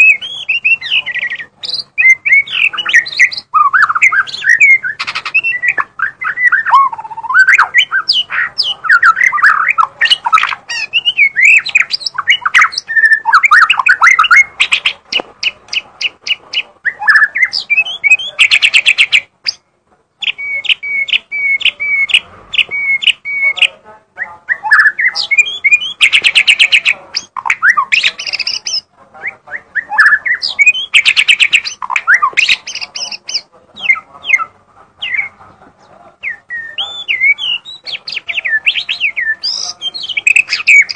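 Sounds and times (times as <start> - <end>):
bird singing whistled phrases: 0.0 - 19.6, 20.2 - 35.4, 36.2 - 40.9.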